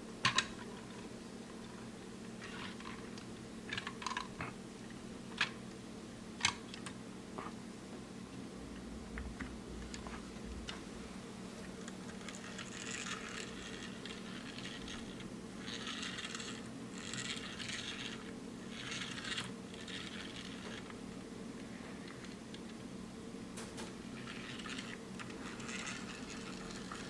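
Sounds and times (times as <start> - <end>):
steady low hum: 0.0 - 27.0
plastic toy vehicles rattling: 12.2 - 20.8, 24.2 - 27.0.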